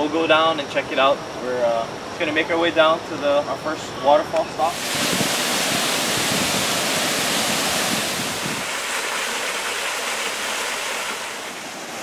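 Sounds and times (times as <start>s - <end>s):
waterfall rushing: 4.6s - 12.0s.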